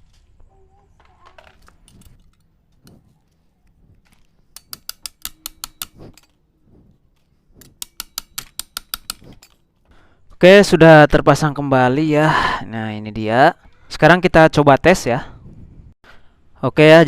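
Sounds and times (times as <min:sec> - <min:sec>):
handling of parts: 0:00.0 - 0:10.0
rapid metal clicking: 0:04.6 - 0:06.4, 0:07.6 - 0:09.6.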